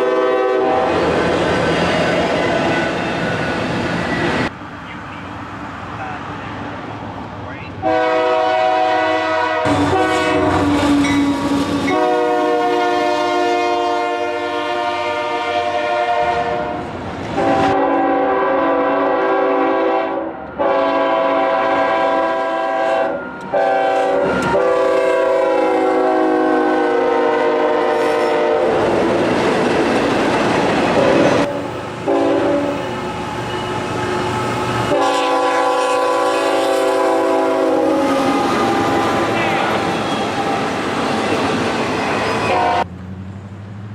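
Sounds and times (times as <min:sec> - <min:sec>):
locomotive air horn blasts: 0:00.0 - 0:01.1, 0:07.8 - 0:28.8, 0:31.0 - 0:40.5, 0:42.1 - 0:42.9
train rumbling and clattering: 0:00.0 - 0:43.9.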